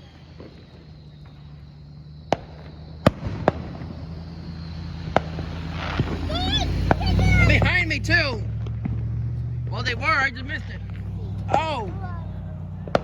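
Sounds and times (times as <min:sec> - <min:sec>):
fireworks bangs: 0:00.0 - 0:13.0
low engine hum: 0:00.0 - 0:13.0.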